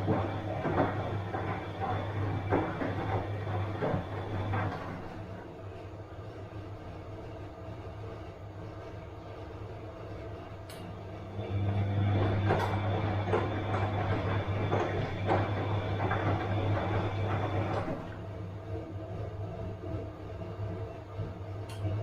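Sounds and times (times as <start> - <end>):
tumbling load knocks: 0.0 - 5.2, 12.2 - 18.2
washing machine motor hum: 0.0 - 22.0.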